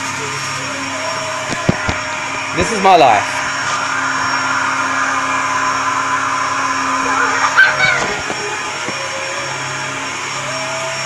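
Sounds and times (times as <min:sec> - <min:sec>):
upright vacuum cleaner running: 0:00.0 - 0:11.0
high voice-like sound: 0:07.0 - 0:08.3.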